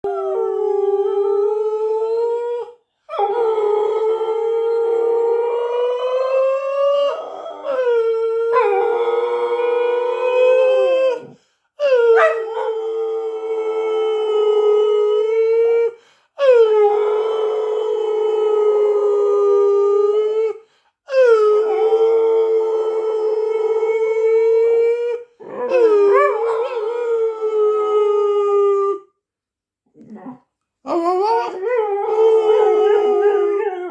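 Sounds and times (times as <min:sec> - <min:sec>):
dog howling: 0:00.0 - 0:20.6, 0:21.2 - 0:29.1, 0:30.0 - 0:33.9
person howling: 0:30.9 - 0:33.9.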